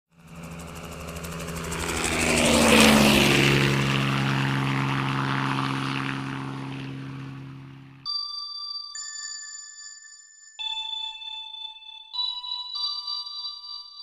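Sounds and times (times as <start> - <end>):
helicopter flying past: 0.1 - 8.1.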